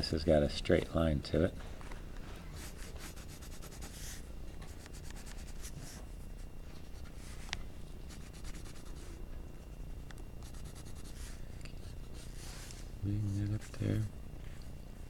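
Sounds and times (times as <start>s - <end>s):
pencil scratching on paper: 2.6s - 6.0s, 8.1s - 9.2s, 10.4s - 11.4s.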